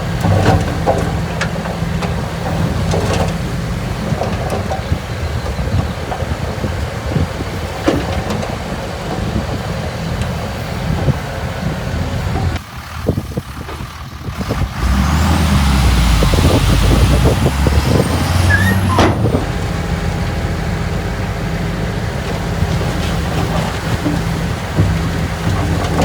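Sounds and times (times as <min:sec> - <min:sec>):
heavy diesel machinery running: 0:00.0 - 0:26.0
high squeal: 0:16.4 - 0:19.3.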